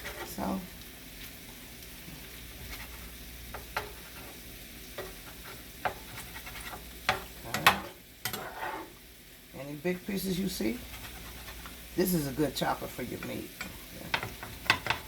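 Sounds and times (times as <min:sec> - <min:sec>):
chicken sizzling in a pan: 0:00.0 - 0:15.0
utensil clinking and scraping pan: 0:05.0 - 0:08.9, 0:13.2 - 0:15.0.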